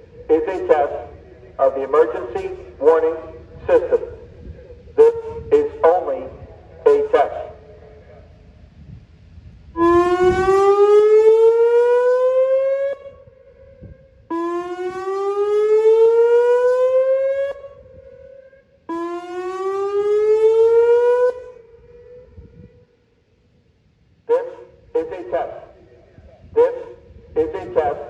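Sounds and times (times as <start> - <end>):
electronic siren whooping: 9.8 - 23.0.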